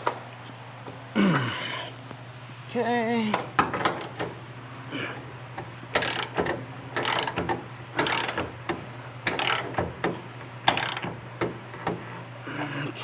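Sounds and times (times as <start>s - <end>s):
ratchet wrench clicking: 6.0s - 6.4s, 7.0s - 7.4s, 8.0s - 8.4s, 9.3s - 9.8s, 10.7s - 11.1s.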